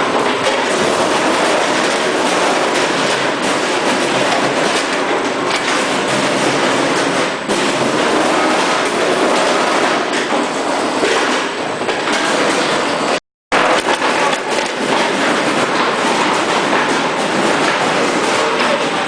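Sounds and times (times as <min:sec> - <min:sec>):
frozen chicken clattering in machine: 0:00.0 - 0:19.0.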